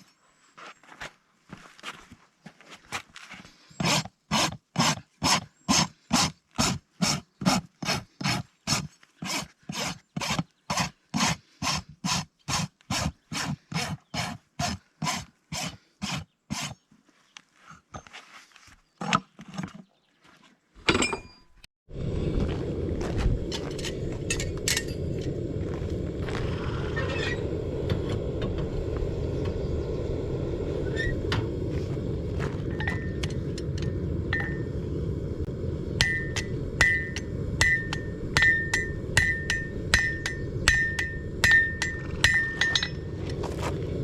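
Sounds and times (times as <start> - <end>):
rasp filing a horse's hoof: 3.8 - 16.8
low rumbling noise: 21.9 - 44.0
sharp metal clank: 36.0 - 43.2.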